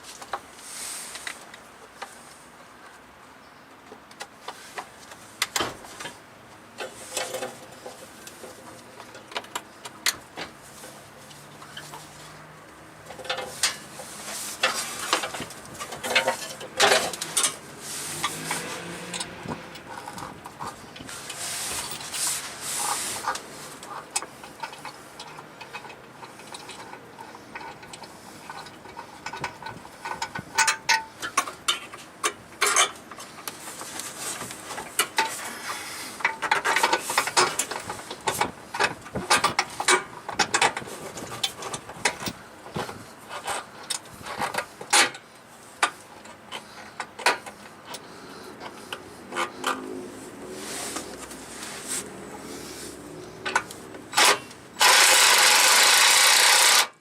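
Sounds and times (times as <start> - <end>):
ratchet clicking: 53.6 - 57.0.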